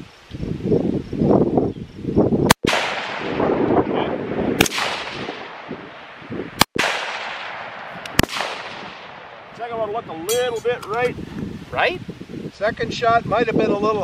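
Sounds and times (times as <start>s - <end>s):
rifle shots with echo: 2.5s - 3.9s, 4.5s - 9.5s.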